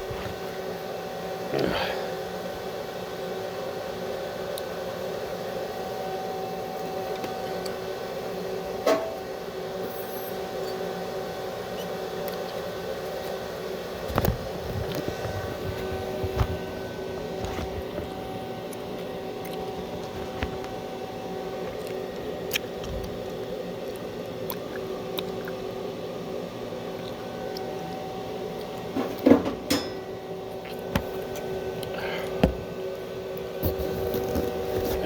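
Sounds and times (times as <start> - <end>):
welding machine humming: 30.0 - 35.0.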